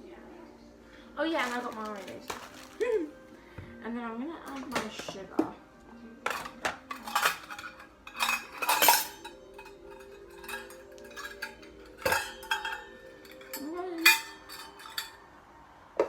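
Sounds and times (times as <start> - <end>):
utensils clinking against bowls: 1.4 - 2.9, 4.5 - 5.5, 6.2 - 15.3.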